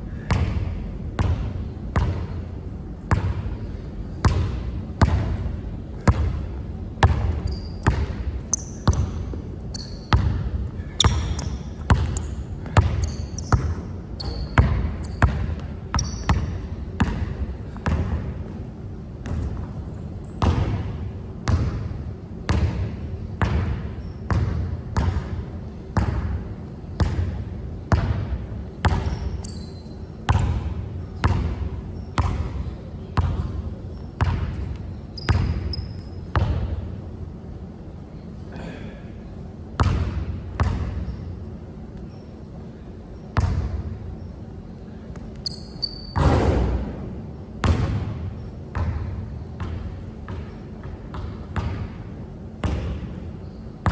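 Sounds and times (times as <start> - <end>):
basketball bouncing on hard court: 1.2 - 2.4, 3.1 - 3.4, 4.2 - 18.4, 19.2 - 25.4, 26.0 - 26.4, 27.0 - 29.6, 30.3 - 33.6, 34.2 - 36.8, 39.8 - 41.2, 43.4 - 43.8, 45.4 - 47.0, 47.6 - 52.0, 52.6 - 53.1
short high squeaks: 8.5 - 10.1, 13.0 - 15.2, 29.1 - 30.0, 45.4 - 46.2.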